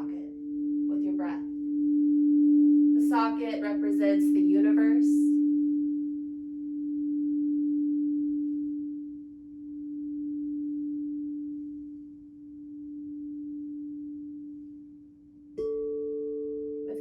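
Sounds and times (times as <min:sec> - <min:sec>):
crystal singing bowl tone: 0:00.0 - 0:17.0.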